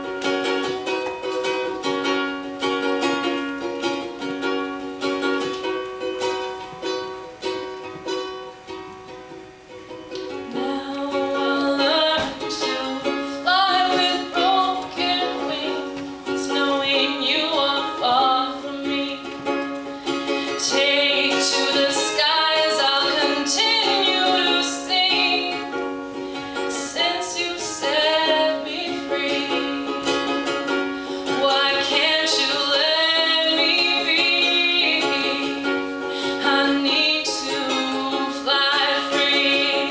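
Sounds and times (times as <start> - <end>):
ukulele strumming: 0.0 - 39.9
woman singing: 10.4 - 39.9.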